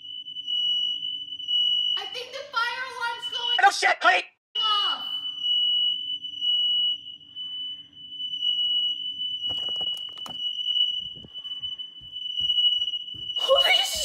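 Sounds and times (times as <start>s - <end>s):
smoke alarm high-pitched tone: 0.0s - 3.8s, 4.6s - 14.0s
sharp knocks: 9.5s - 10.4s.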